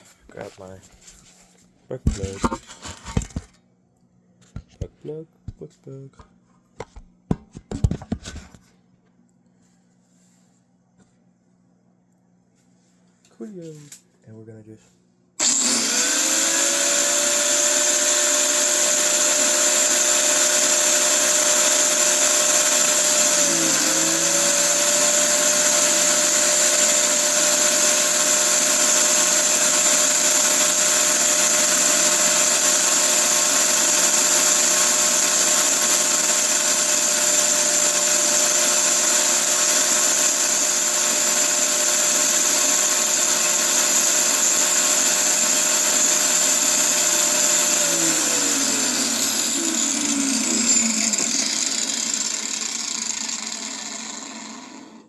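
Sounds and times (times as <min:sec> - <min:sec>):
electric power tool whining: 0:15.4 - 0:55.0.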